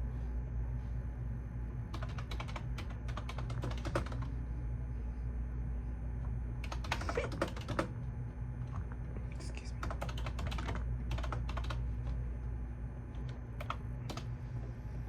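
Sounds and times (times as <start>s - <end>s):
steady low hum: 0.0s - 15.0s
computer keyboard typing: 1.9s - 4.3s, 6.6s - 8.0s, 9.8s - 12.2s, 13.1s - 14.3s.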